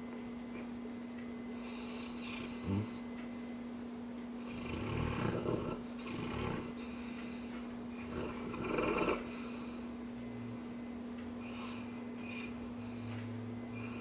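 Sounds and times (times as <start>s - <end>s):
steady low hum: 0.0s - 14.0s
dog snoring: 1.6s - 3.1s, 4.4s - 7.0s, 8.0s - 9.6s, 11.4s - 14.0s.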